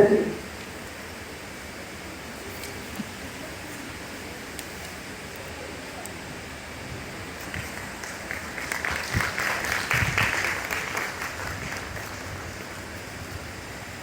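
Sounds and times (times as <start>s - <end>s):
audience applauding: 7.3s - 13.2s.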